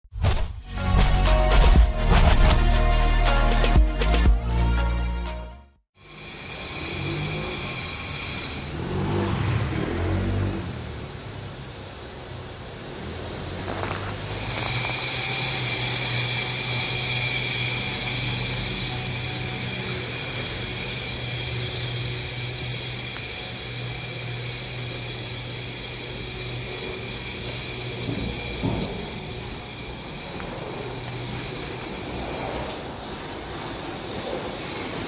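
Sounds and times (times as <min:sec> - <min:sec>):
high mechanical whine: 0:13.7 - 0:35.0.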